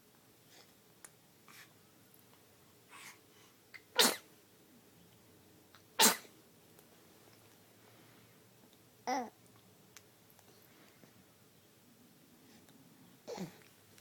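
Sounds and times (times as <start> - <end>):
short sharp sneezes: 4.0 - 4.3, 6.0 - 6.3.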